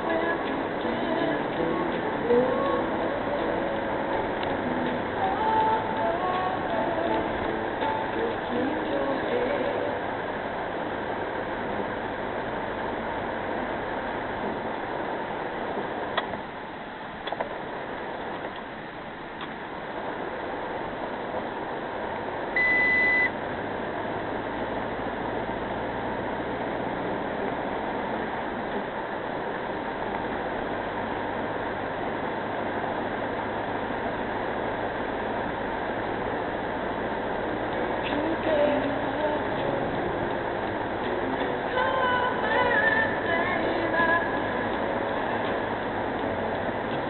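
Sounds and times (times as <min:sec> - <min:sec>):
car road and engine noise: 0:00.0 - 0:47.0
high electronic beep: 0:22.6 - 0:23.3.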